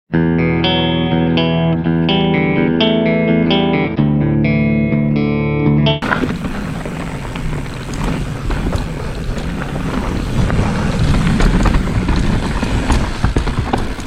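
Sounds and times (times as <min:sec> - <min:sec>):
bike clicks and rattles: 0:06.0 - 0:14.0
tyres crunching over dirt and rock: 0:06.0 - 0:14.0
wind buffeting the microphone: 0:06.0 - 0:14.0.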